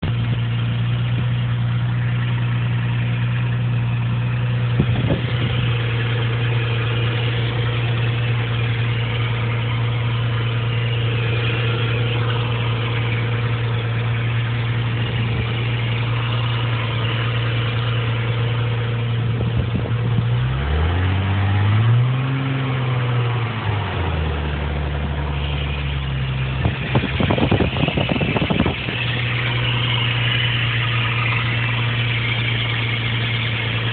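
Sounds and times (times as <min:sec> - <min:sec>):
car engine idling: 0:00.0 - 0:33.9
rough engine clatter: 0:00.0 - 0:33.9
scraping rotational sound: 0:03.8 - 0:20.6, 0:24.9 - 0:33.9.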